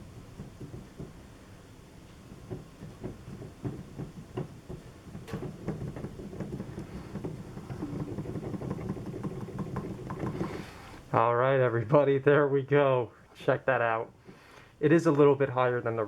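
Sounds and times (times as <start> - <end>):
tools knocking and clicking in piano: 0.0 - 11.1.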